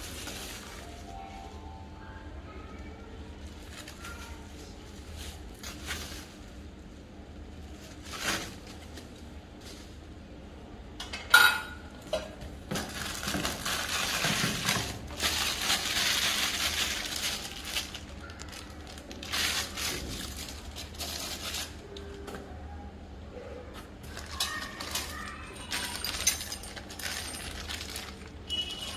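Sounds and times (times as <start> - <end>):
packaging crinkling: 0.0 - 1.2, 12.7 - 22.2, 24.0 - 28.9.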